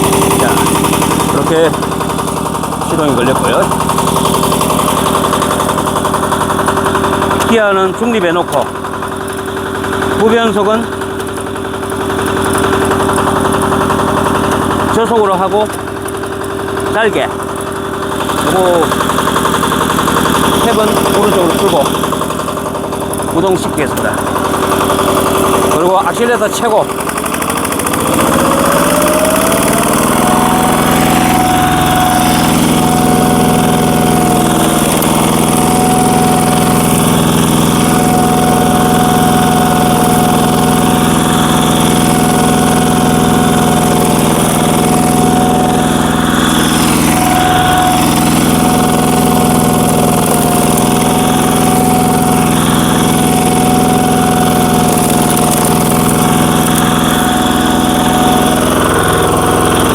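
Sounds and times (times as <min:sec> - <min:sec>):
diesel engine revving: 0:00.0 - 0:59.9
steady whine: 0:28.8 - 0:59.9.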